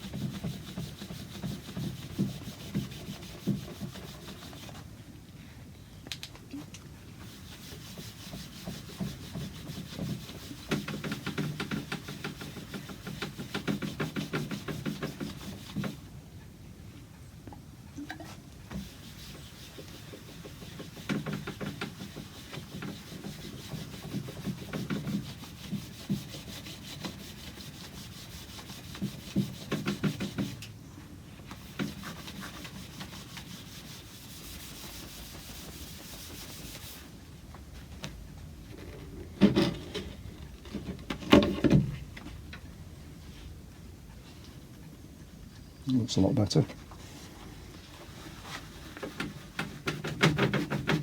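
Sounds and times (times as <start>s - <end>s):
cloth scrubbing wood: 0.0s - 4.9s, 7.2s - 16.1s, 18.7s - 30.6s, 31.5s - 37.2s, 47.0s - 51.0s.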